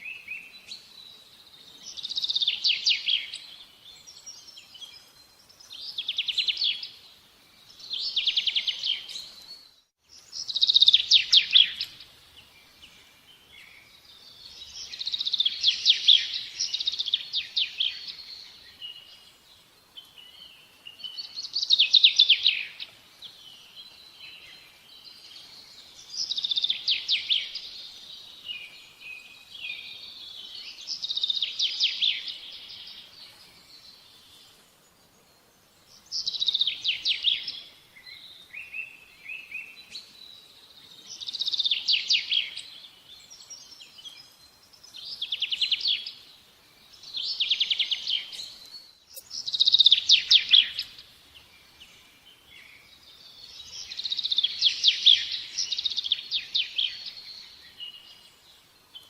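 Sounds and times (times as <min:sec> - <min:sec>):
songbird singing: 0:00.0 - 0:59.0
soft bird twittering: 0:20.0 - 0:59.0.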